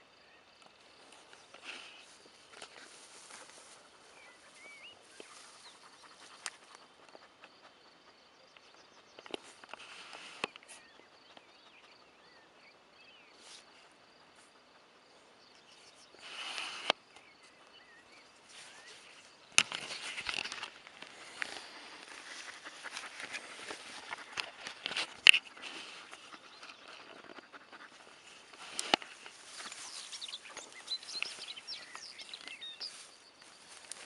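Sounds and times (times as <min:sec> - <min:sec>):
rustling footsteps: 0:00.8 - 0:07.6, 0:18.4 - 0:34.0.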